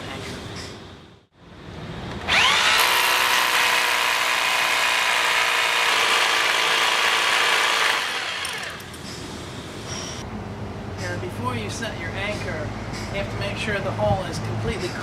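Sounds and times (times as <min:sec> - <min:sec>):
rotary hammer drilling: 0:02.2 - 0:09.0.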